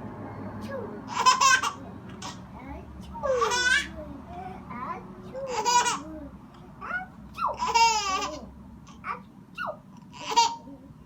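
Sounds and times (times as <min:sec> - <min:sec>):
baby laughing and squealing: 0:00.6 - 0:02.4, 0:05.5 - 0:06.1, 0:06.8 - 0:10.7
baby babbling: 0:00.6 - 0:11.0.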